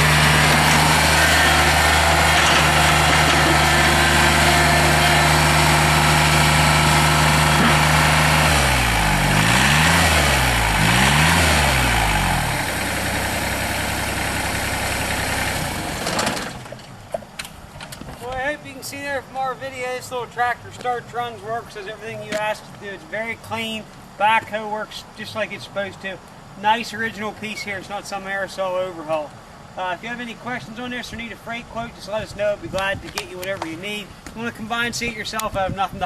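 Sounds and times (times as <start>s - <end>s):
tractor diesel engine revving: 0.0s - 16.8s.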